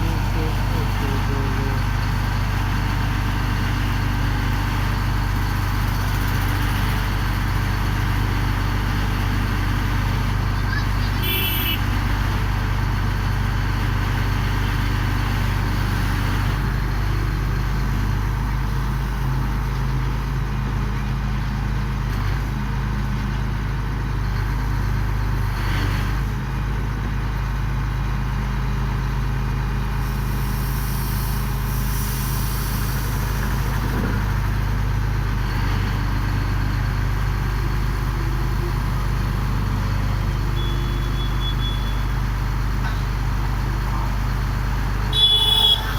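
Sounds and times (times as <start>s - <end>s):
drilling rig engine running: 0.0s - 22.7s, 23.8s - 45.9s.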